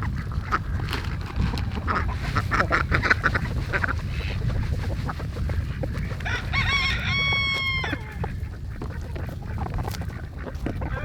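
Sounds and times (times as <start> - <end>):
low rumbling background noise: 0.0 - 11.0
rooster crowing: 6.2 - 8.3.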